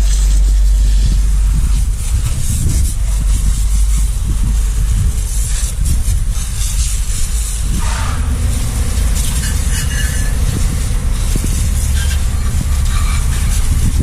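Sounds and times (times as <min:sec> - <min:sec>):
low rumble: 0:00.0 - 0:14.0
pressure washer water jet hiss: 0:00.0 - 0:14.0.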